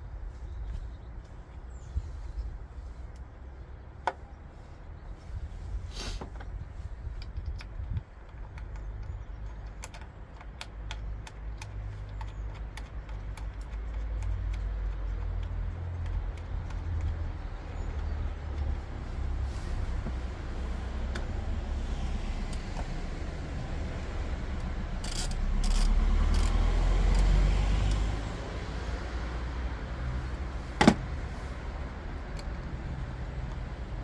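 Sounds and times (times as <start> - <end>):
light clicks of tools: 6.4 - 18.8, 24.0 - 28.3.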